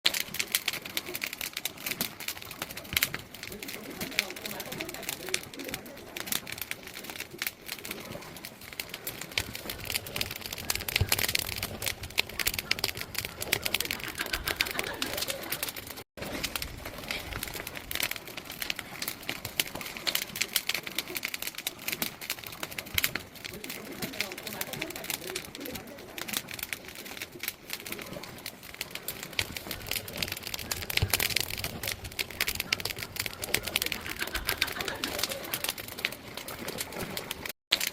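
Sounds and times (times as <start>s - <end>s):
firewood crackling and popping: 0.0s - 37.9s.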